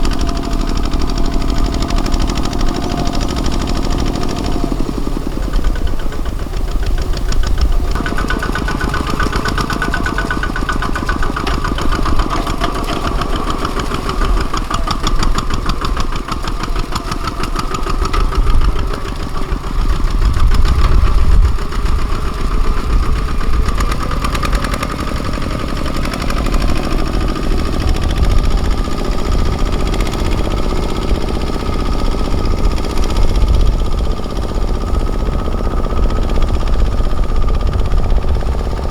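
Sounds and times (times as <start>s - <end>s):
tractor diesel engine chugging: 0.0s - 38.9s.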